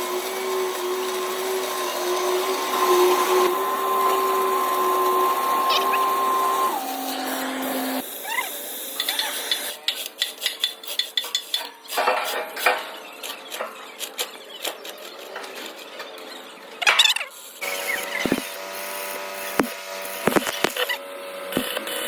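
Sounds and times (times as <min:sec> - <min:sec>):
steady machine tone: 0:00.0 - 0:08.1.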